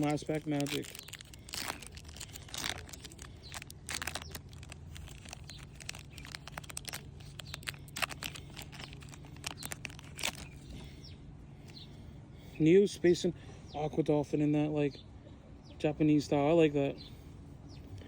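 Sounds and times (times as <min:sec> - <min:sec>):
foil wrapper tearing and crinkling: 0:00.0 - 0:10.6.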